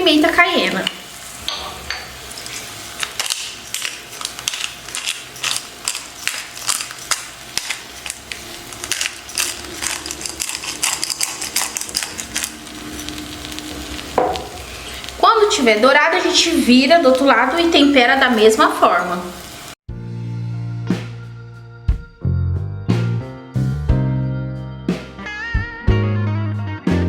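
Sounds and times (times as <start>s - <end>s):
eggplant sizzling in oil: 0.0s - 19.8s
pepper grinder ratcheting clicks: 3.0s - 12.6s.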